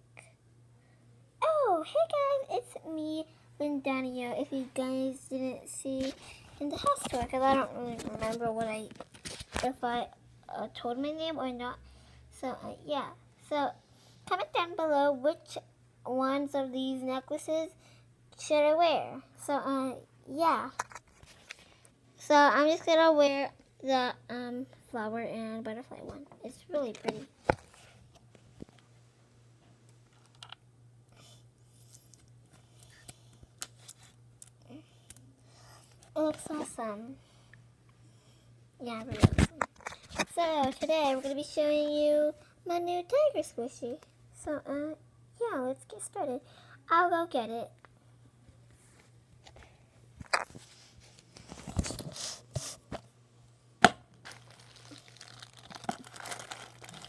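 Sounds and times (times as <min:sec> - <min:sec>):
steady low hum: 0:00.0 - 0:57.0
rustling and handling noises: 0:04.2 - 0:09.8, 0:20.5 - 0:22.0, 0:26.0 - 0:29.0, 0:31.8 - 0:37.0, 0:38.8 - 0:42.1, 0:48.5 - 0:53.2, 0:54.1 - 0:57.0.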